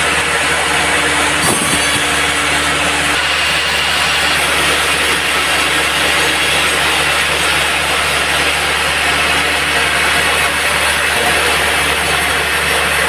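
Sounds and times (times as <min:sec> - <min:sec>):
motor hum: 0:00.0 - 0:13.0
saw blade cutting log: 0:01.2 - 0:06.8.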